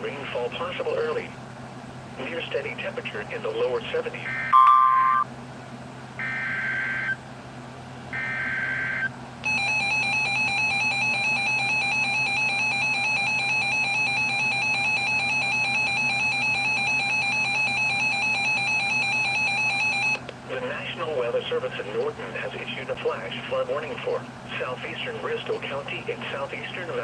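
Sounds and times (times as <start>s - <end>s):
data burst tones: 4.2s - 5.2s
steady two-tone attention signal: 4.2s - 5.3s.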